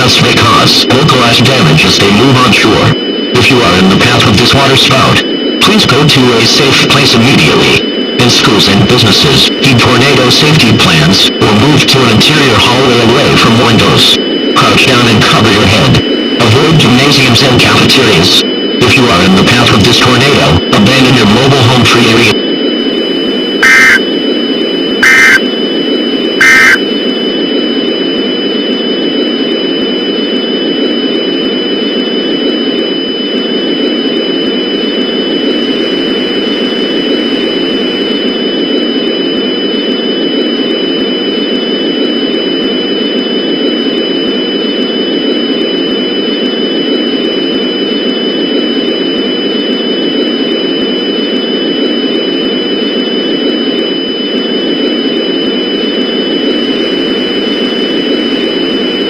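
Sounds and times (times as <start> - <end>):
digital data bursts: 0.0 - 22.4, 23.6 - 24.1, 25.0 - 25.5, 26.4 - 26.8
loud static noise: 0.0 - 59.0.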